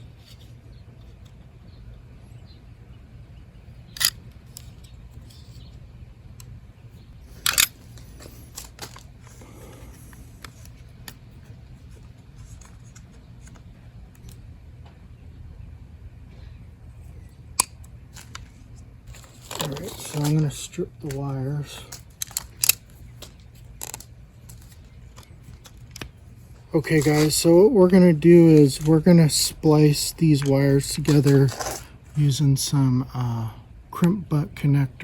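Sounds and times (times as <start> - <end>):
steady low hum: 0.0 - 35.0
hand tools snipping cord: 19.1 - 26.1, 28.4 - 31.9.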